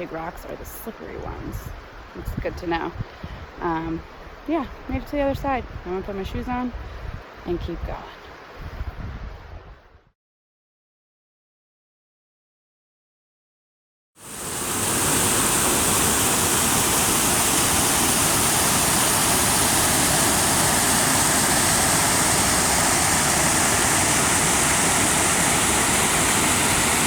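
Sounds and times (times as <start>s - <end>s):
rushing river water: 14.2s - 27.0s.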